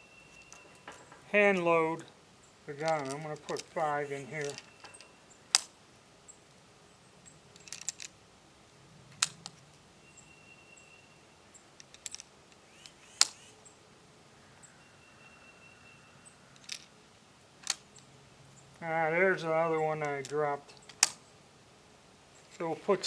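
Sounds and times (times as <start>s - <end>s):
light clicks and rattles: 0.4s - 5.7s, 7.2s - 8.2s
cartridges clicking into magazine: 20.8s - 21.2s.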